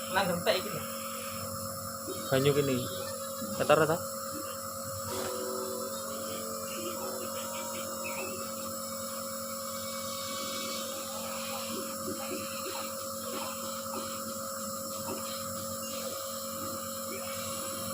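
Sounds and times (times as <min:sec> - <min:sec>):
nebulizer compressor humming: 0:00.0 - 0:17.9.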